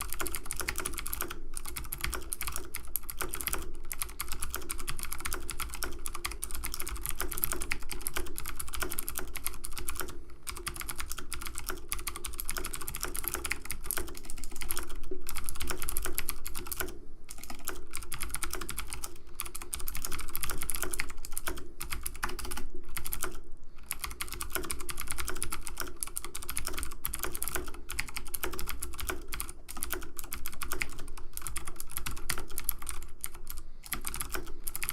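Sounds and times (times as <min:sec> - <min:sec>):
keyboard keys clicking: 0:00.0 - 0:34.9.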